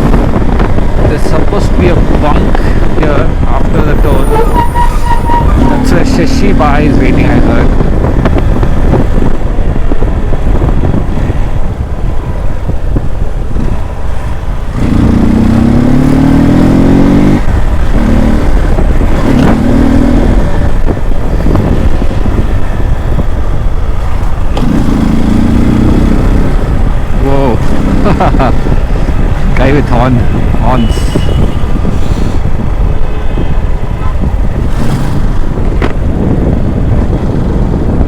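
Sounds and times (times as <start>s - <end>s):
wind rush on microphone: 0.0s - 38.0s
motorcycle engine accelerating: 14.1s - 30.6s, 34.1s - 38.0s.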